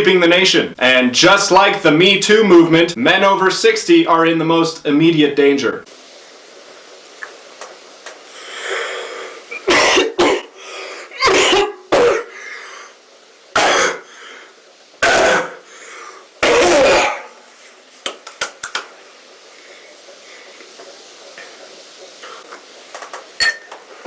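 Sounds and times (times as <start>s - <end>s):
man coughing: 9.6s - 10.5s, 11.2s - 12.4s, 13.6s - 14.0s, 16.4s - 17.3s.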